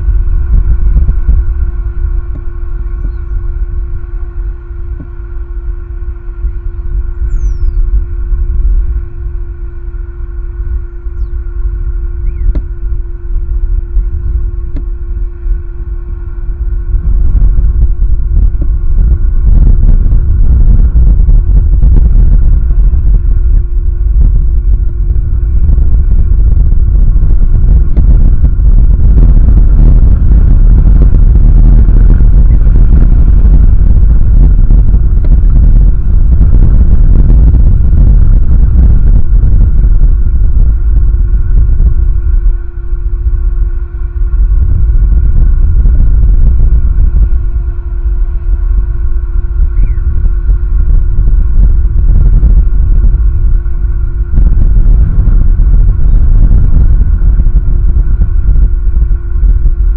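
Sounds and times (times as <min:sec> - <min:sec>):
wind buffeting microphone: 0:00.0 - 0:59.9.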